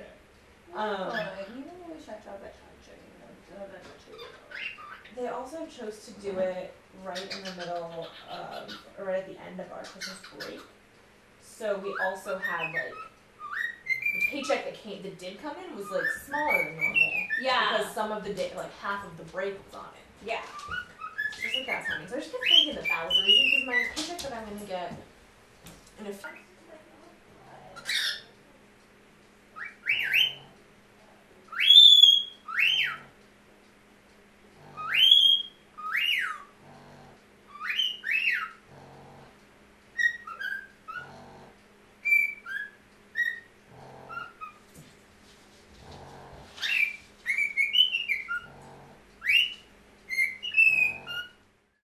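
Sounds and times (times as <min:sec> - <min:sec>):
bird whistling: 0:11.9 - 0:14.6, 0:15.8 - 0:17.6, 0:20.4 - 0:24.0, 0:29.6 - 0:30.5, 0:31.5 - 0:33.1, 0:34.8 - 0:36.5, 0:37.5 - 0:38.6, 0:40.0 - 0:41.1, 0:42.0 - 0:43.5, 0:46.6 - 0:48.5, 0:49.2 - 0:51.4.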